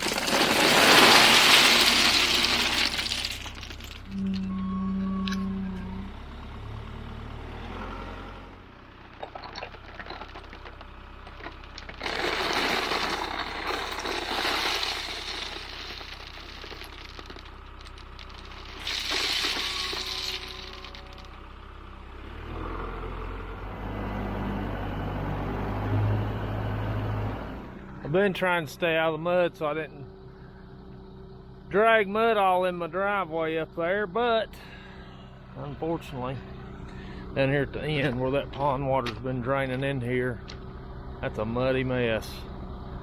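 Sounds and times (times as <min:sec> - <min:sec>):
gravel crashing from loader bucket: 0:00.0 - 0:04.2, 0:09.1 - 0:21.4
diesel tractor engine running: 0:00.0 - 0:43.0.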